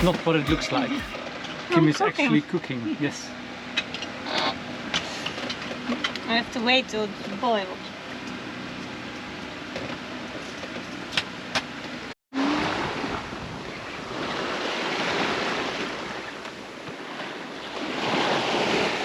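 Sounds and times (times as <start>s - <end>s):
sea and wind rushing: 12.4s - 19.0s.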